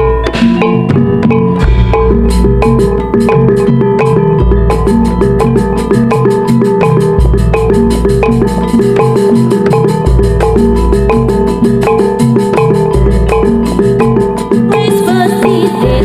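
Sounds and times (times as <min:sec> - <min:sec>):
deep bass tones: 0:00.0 - 0:05.4
drums: 0:00.0 - 0:16.0
tuned metal percussion melody: 0:00.0 - 0:16.0.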